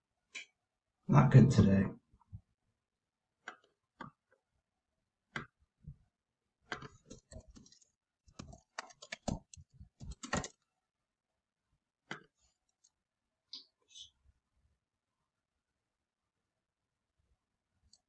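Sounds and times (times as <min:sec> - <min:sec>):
computer keyboard typing: 0:06.7 - 0:10.6.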